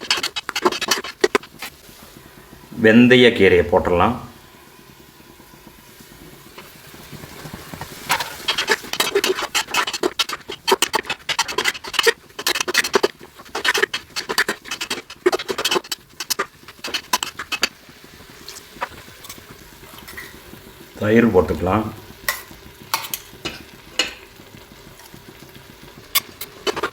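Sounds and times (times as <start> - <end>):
spoon stirring and scraping pot: 0.0 - 2.0, 6.6 - 20.6, 21.4 - 26.9.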